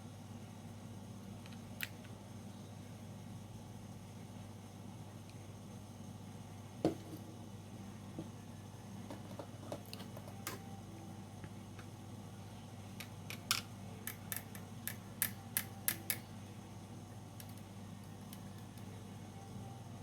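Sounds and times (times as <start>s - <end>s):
clicks of small parts: 13.0s - 16.2s.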